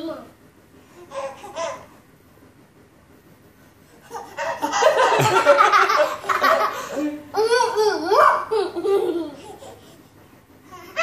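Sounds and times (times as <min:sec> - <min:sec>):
young children laughing: 0:04.1 - 0:09.8.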